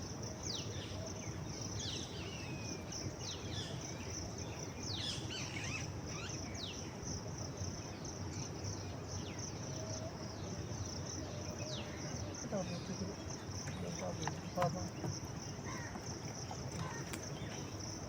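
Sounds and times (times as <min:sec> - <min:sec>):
insect chorus drone: 0:00.0 - 0:18.0
birds chirping: 0:10.8 - 0:18.0.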